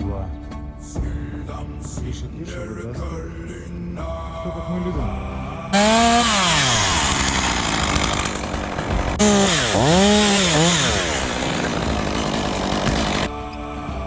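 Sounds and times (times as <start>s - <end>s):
chainsaw revving: 5.8s - 13.3s.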